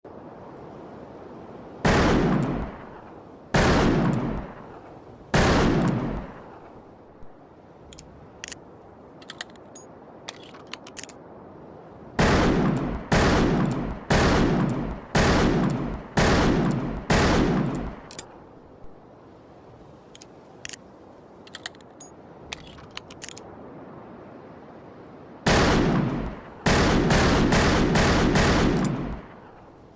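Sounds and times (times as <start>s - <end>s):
light clicks: 7.9s - 11.2s, 20.1s - 23.5s.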